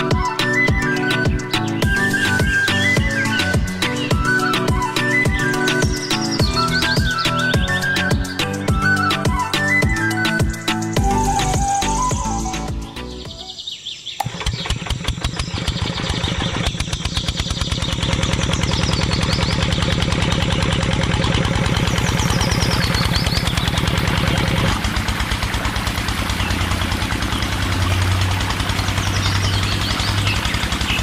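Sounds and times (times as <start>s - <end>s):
engine running: 0.0s - 13.4s, 14.2s - 31.0s
faint birds chirping: 0.6s - 19.8s, 21.8s - 24.2s.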